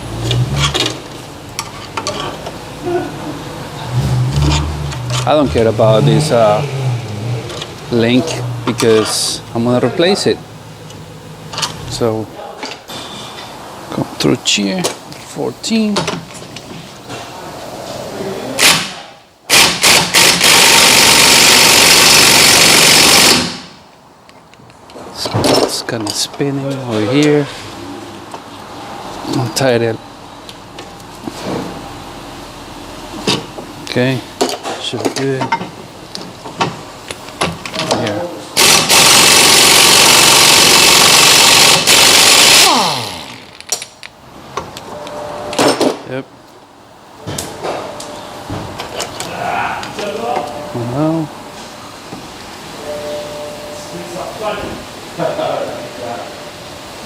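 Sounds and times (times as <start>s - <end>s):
impact wrench hammering: 18.6s - 23.8s, 38.6s - 43.8s
motor winding down: 19.5s - 23.6s, 38.6s - 43.6s.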